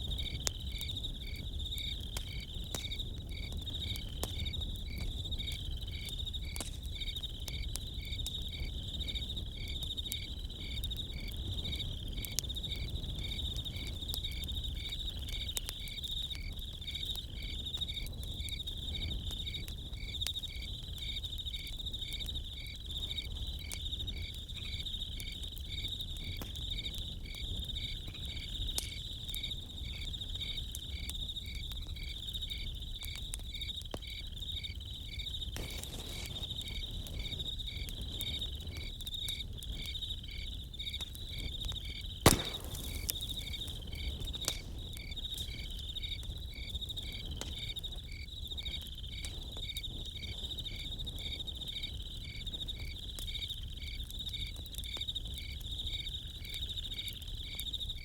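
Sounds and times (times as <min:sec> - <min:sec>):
campfire crackling: 0:00.0 - 0:58.0
crickets chirping: 0:00.0 - 0:58.0
sharp pop from fire: 0:35.6 - 0:36.5, 0:42.2 - 0:45.7.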